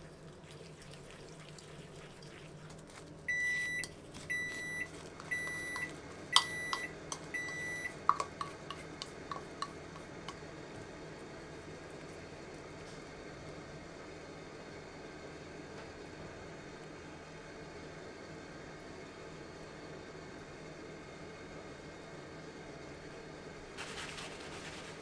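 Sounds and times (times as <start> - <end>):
kitchen appliance beeps: 3.3 - 8.0.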